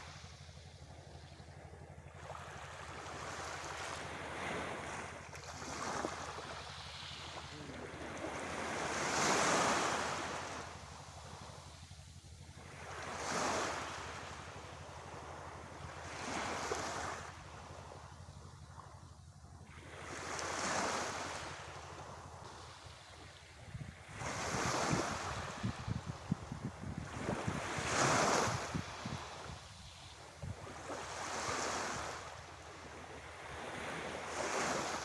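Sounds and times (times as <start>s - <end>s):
sea waves washing ashore: 2.2s - 18.9s, 19.6s - 35.0s
wind buffeting microphone: 23.6s - 32.2s.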